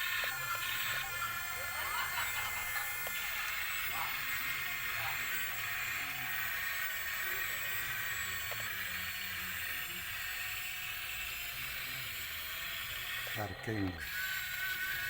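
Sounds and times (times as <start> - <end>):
toy truck motor whirring: 0.0 - 15.0.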